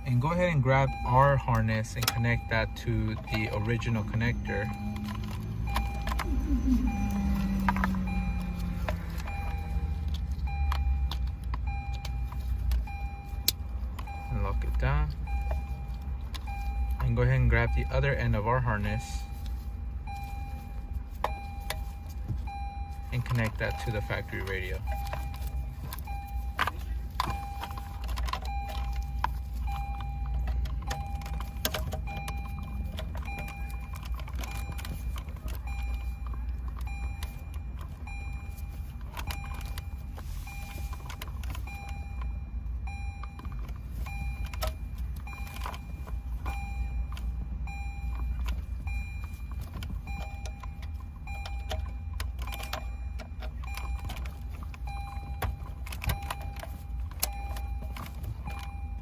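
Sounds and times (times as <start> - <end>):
low steady hum: 0.0 - 59.0
short electronic beeps: 0.0 - 59.0
plastic connectors clicking and rattling: 20.9 - 42.3, 43.0 - 59.0.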